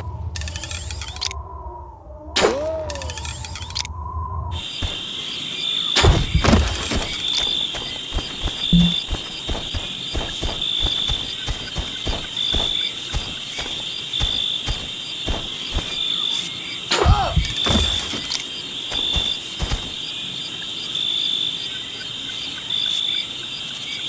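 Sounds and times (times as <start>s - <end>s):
crickets chirping: 0.0s - 24.0s
voice-like squeal: 1.0s - 3.9s.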